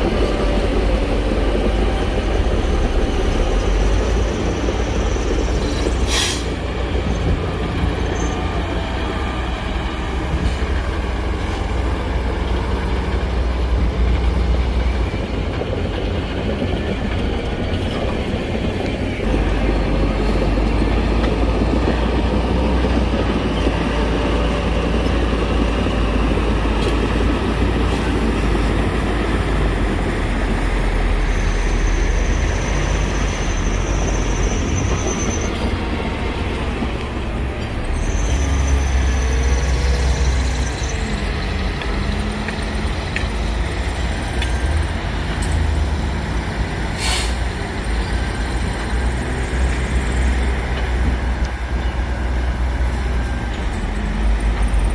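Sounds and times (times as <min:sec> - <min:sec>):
diesel construction machinery rumble: 0:00.0 - 0:54.9
high thin squeal: 0:04.9 - 0:07.2.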